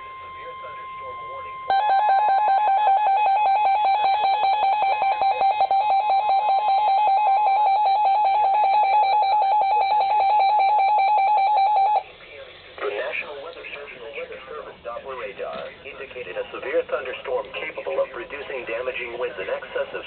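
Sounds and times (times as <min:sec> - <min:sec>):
warbling electronic alarm tone: 0:00.0 - 0:12.1
faint steady tone: 0:00.0 - 0:12.6.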